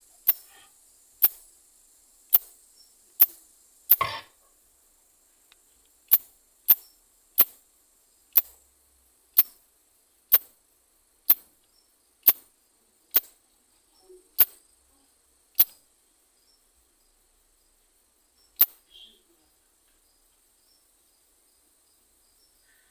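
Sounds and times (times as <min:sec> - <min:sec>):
short raspy insect burst: 0:00.0 - 0:04.5, 0:06.0 - 0:08.7, 0:09.3 - 0:09.7, 0:10.3 - 0:10.6, 0:11.2 - 0:13.4, 0:14.0 - 0:16.6, 0:18.3 - 0:19.5
katydid tapping: 0:00.2 - 0:01.5, 0:02.2 - 0:02.6, 0:03.2 - 0:04.3, 0:05.5 - 0:07.6, 0:08.3 - 0:08.6, 0:09.3 - 0:09.6, 0:10.3 - 0:10.6, 0:11.2 - 0:12.5, 0:13.1 - 0:13.4, 0:14.4 - 0:14.6, 0:15.6 - 0:15.8, 0:18.5 - 0:19.1.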